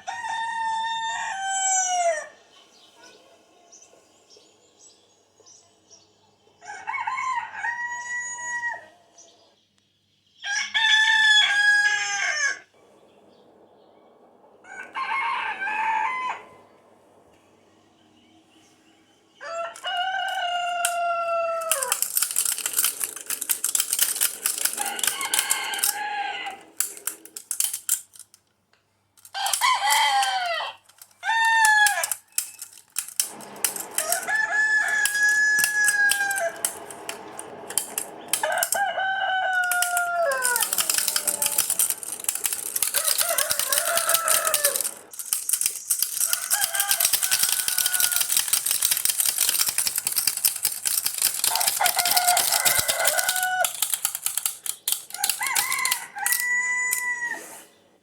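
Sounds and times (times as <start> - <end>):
rooster crowing: 0.0 - 2.5, 6.6 - 9.1, 10.4 - 12.7, 14.6 - 16.8, 19.4 - 27.3, 29.3 - 32.6, 33.2 - 45.2, 46.1 - 49.6, 51.3 - 57.7
dense rapid clicking: 20.0 - 21.0, 21.6 - 28.4, 29.2 - 38.9, 39.5 - 56.4.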